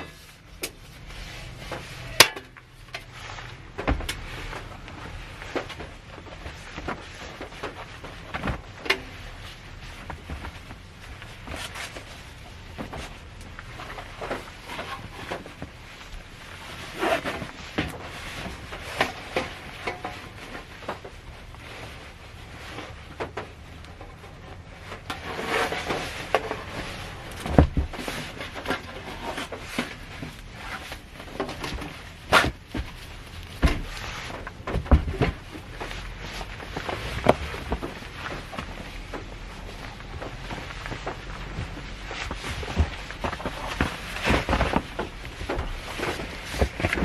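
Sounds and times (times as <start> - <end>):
thuds: 1.5 - 9.2, 24.9 - 47.0.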